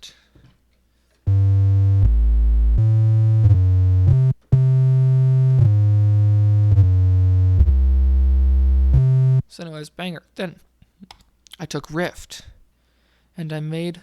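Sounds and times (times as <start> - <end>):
synth bass held notes: 1.3 - 9.5.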